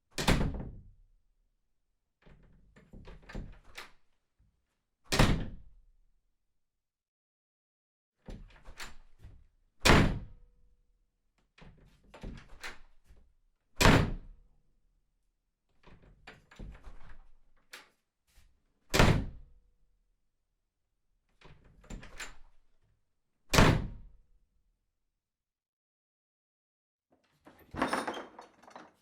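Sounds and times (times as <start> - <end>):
door slamming: 27.7 - 29.0.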